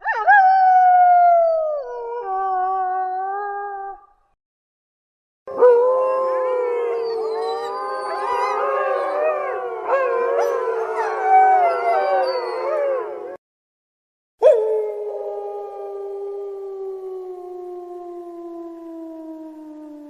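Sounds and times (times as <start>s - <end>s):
wolves howling: 5.5s - 13.4s, 14.4s - 20.0s.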